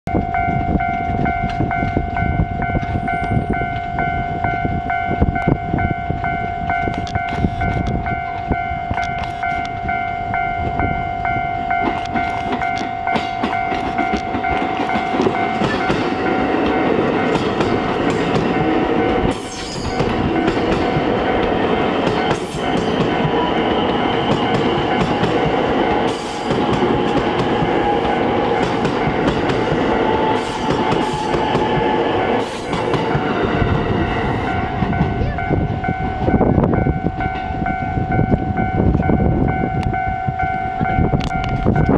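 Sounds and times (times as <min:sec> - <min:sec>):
level crossing alarm ringing: 0:00.1 - 0:41.9
train wheels clattering over rails: 0:11.8 - 0:35.2.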